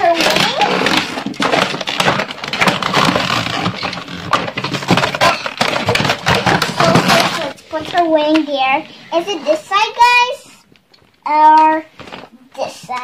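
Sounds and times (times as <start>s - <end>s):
plastic packaging crinkling: 0.0s - 8.1s, 11.9s - 13.0s.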